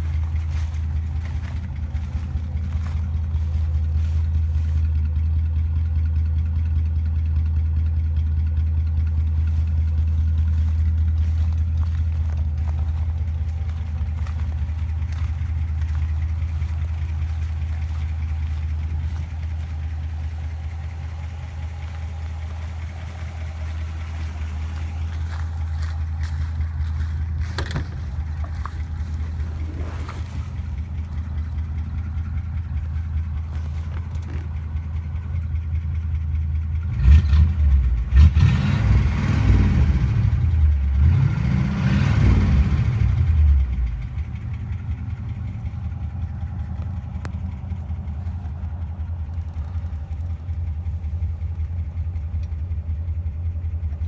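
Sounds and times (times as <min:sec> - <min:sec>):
vehicle engine idling and revving: 0:00.0 - 0:54.0.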